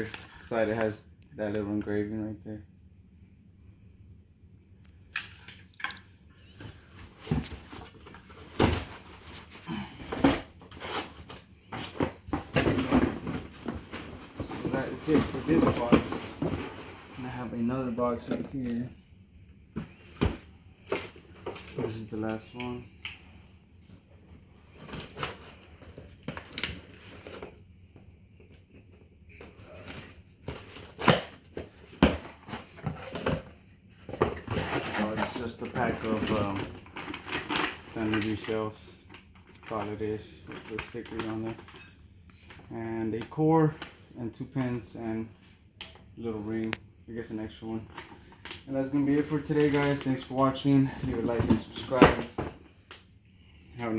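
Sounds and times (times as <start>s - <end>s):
knocks and clunks of handling: 5.8s - 17.4s, 29.4s - 38.2s
cardboard packaging rustling: 6.5s - 18.9s, 24.6s - 27.7s, 29.4s - 41.8s, 47.9s - 52.8s.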